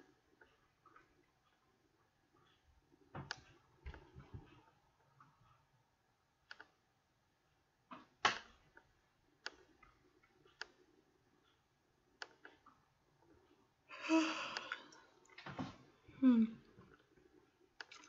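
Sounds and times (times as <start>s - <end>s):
faint clicks and knocks: 0.0s - 13.7s.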